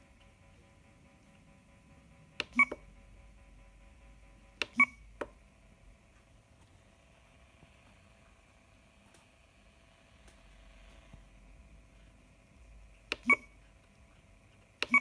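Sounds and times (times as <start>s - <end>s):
faint electronic whine: 0.0s - 15.0s
button clicks: 2.4s - 2.8s
short beep: 2.4s - 2.8s, 4.7s - 5.0s.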